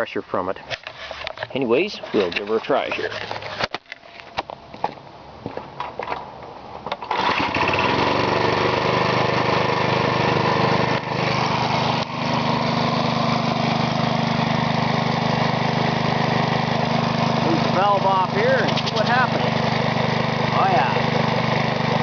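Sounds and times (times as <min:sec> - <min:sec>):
lawnmower engine running: 0:06.9 - 0:22.0.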